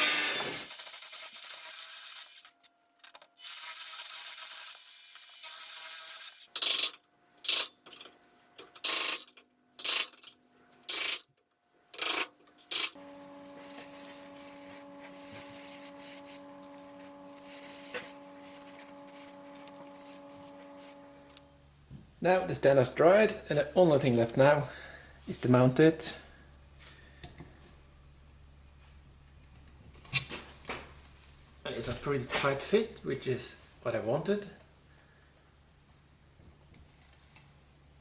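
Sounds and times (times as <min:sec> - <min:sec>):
steady low hum: 0:11.8 - 0:21.9
wood sanding by hand: 0:13.0 - 0:21.1.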